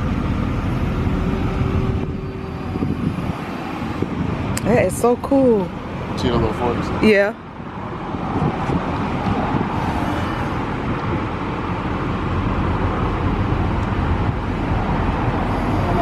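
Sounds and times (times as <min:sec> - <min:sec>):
forklift engine running: 0:00.0 - 0:06.2.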